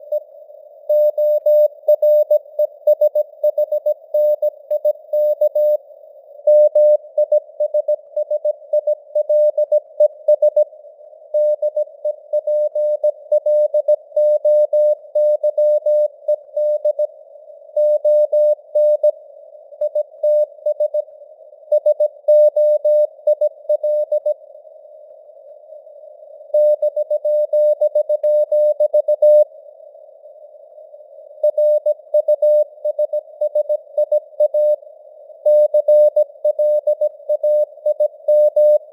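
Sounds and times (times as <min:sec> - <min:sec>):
morse code beeps: 0:35.5 - 0:38.8.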